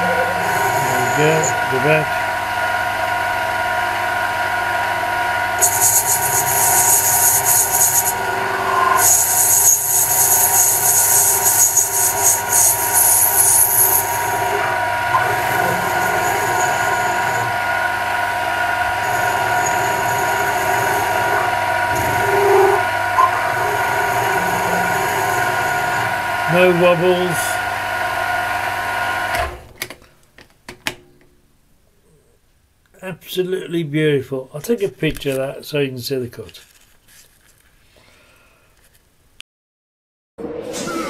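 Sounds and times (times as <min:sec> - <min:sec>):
high hissing cutting screech: 0:00.0 - 0:02.3, 0:05.6 - 0:28.4
lathe gear whine: 0:00.0 - 0:29.4.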